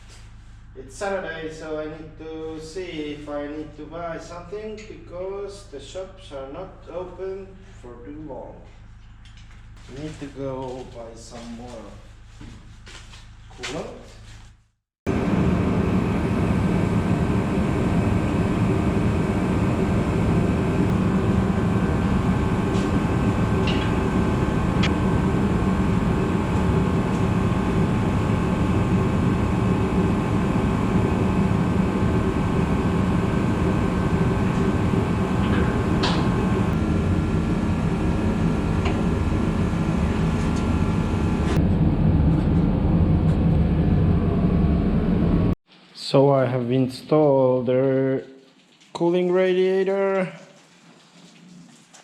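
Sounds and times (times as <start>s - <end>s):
vehicle driving rumble: 15.2s - 45.6s.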